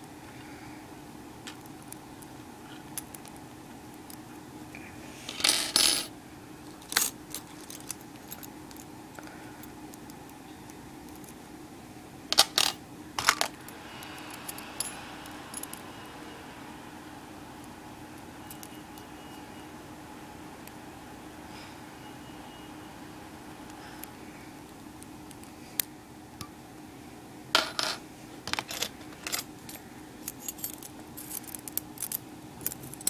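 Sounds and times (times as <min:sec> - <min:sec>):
metal puzzle pieces clinking: 0:27.6 - 0:29.5, 0:30.2 - 0:33.0.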